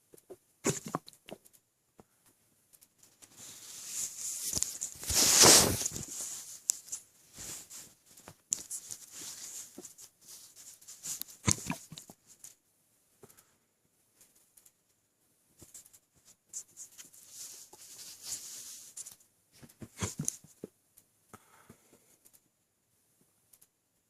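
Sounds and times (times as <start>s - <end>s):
stomach crackling and rustling: 0.0s - 12.6s, 15.6s - 20.8s
person hiccuping: 0.7s - 1.0s.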